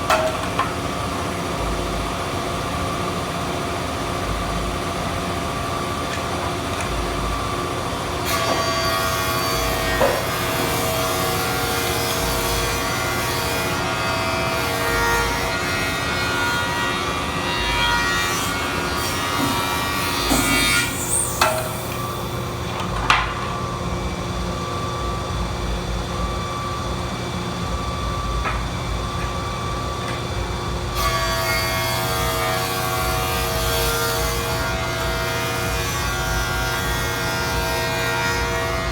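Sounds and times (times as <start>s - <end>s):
woodworking machine cutting boards: 5.2s - 24.1s, 27.8s - 38.9s.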